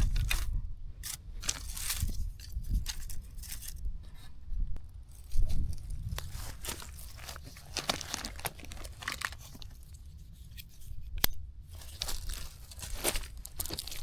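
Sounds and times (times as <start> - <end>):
dry grass and twigs crackling: 0.0 - 14.0.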